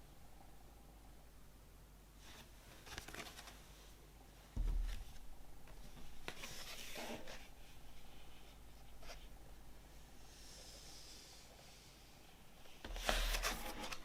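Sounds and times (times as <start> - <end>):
dull thump: 4.6 - 5.3
packaging rustling and scraping: 12.9 - 14.0.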